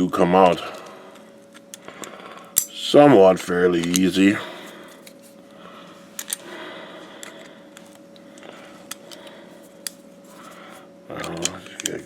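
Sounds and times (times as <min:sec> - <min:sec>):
screwdriver metal clicks and scrapes: 0:11.2 - 0:12.0.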